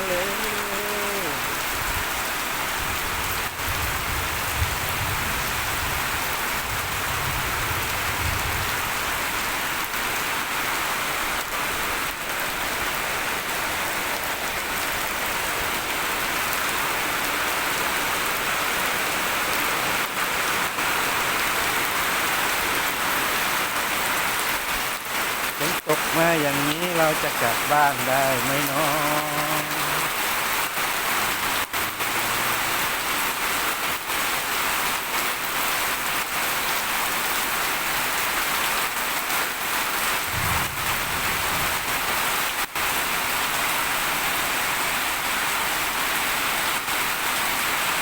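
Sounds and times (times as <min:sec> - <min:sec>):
steady rain falling: 0:00.0 - 0:48.0
low rumble: 0:40.3 - 0:42.2.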